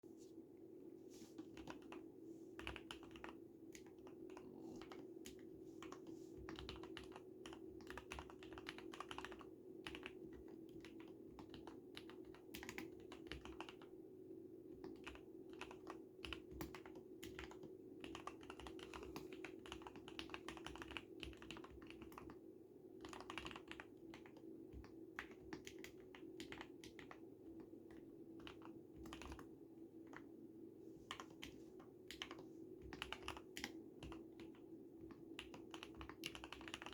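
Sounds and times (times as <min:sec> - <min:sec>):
soft keyboard keystroke clacks: 0:01.3 - 0:13.9, 0:14.7 - 0:22.4, 0:23.0 - 0:30.3, 0:31.0 - 0:36.9.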